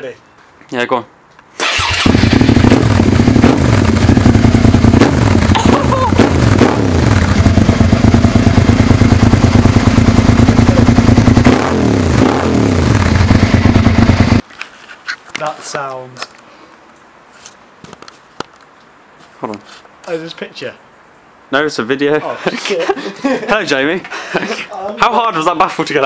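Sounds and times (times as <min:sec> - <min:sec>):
motorcycle engine revving: 0:01.6 - 0:14.4.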